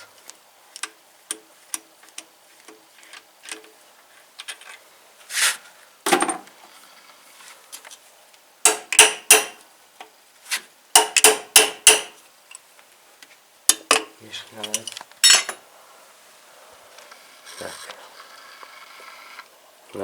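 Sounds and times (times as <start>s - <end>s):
metal scrape: 5.3s - 5.7s
metal-on-metal strikes: 8.7s - 9.6s, 11.0s - 12.2s
metal tools clinking: 13.9s - 15.6s.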